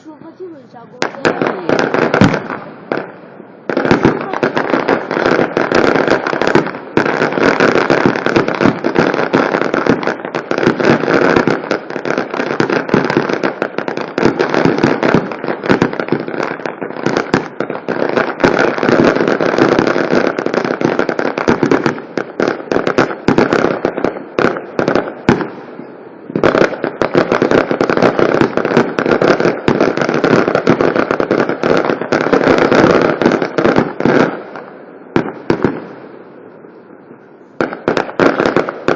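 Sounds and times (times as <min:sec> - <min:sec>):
fireworks crackling and banging: 0:00.0 - 0:38.9.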